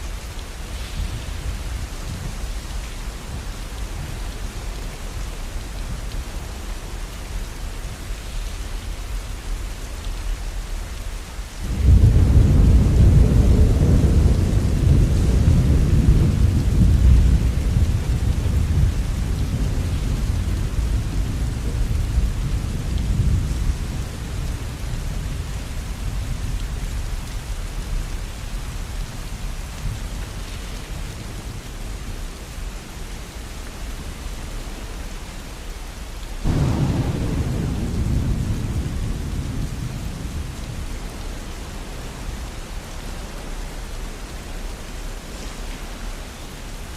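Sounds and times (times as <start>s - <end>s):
steady rainfall: 0.0s - 46.9s
thunder rumbling: 11.6s - 27.2s, 36.4s - 42.8s.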